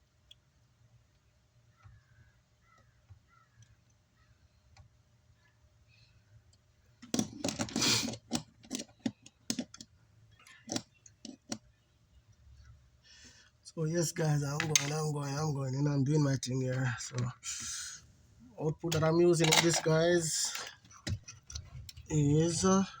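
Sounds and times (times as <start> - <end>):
tools clattering on bench: 14.6 - 15.0, 18.9 - 21.6
rustling clatter: 18.9 - 22.6.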